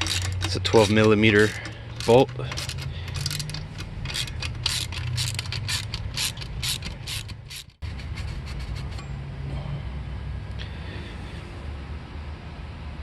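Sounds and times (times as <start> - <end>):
ratchet wrench clicking: 0.0 - 9.1.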